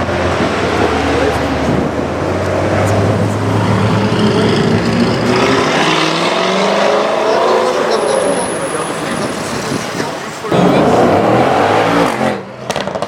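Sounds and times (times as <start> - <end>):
car engine accelerating: 0.0 - 13.0.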